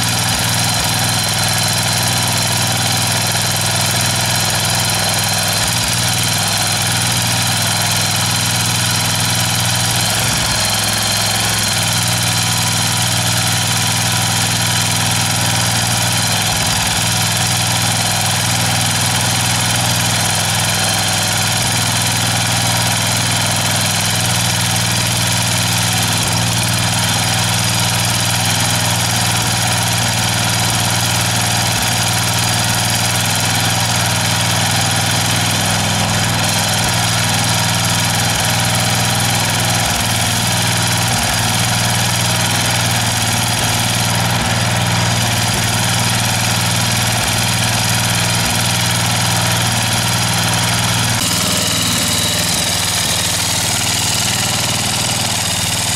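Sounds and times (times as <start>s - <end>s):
small mower engine running: 0.0s - 55.9s.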